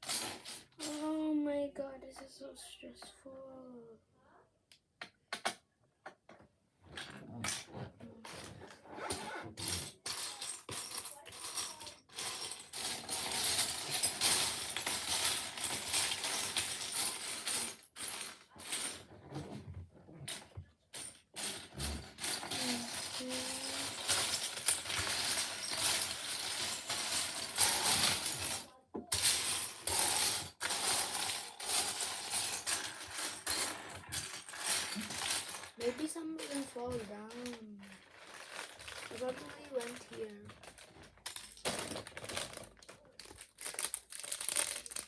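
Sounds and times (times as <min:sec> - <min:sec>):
plastic pieces clattering: 0:00.0 - 0:01.1, 0:09.5 - 0:19.1, 0:20.3 - 0:45.0.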